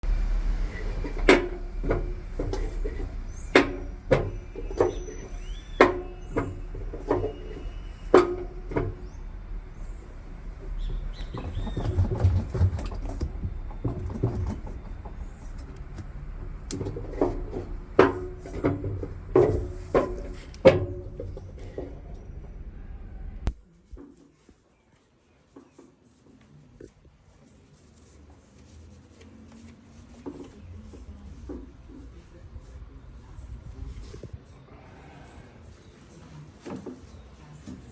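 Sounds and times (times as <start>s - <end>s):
low rumble of spin cycle: 0.0s - 23.6s, 30.5s - 34.7s
washer drum knocking: 0.7s - 15.2s, 15.8s - 22.4s.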